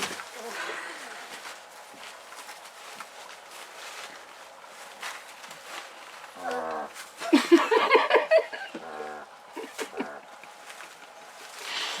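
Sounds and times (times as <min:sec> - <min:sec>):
young animals stirring and rustling: 0:00.0 - 0:07.8, 0:08.6 - 0:12.0.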